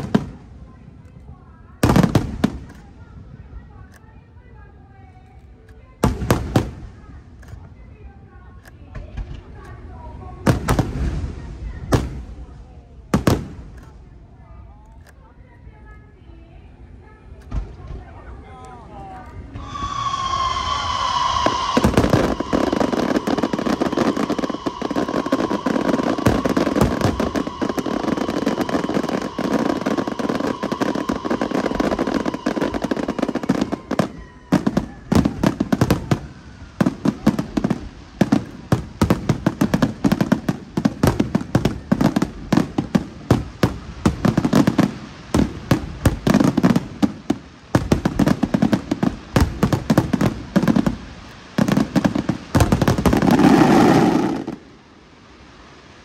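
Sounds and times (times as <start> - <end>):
fireworks bursting: 0.0 - 4.0, 6.0 - 7.8, 8.6 - 14.2, 17.4 - 56.0
firework whistle: 19.4 - 50.9, 51.5 - 54.7.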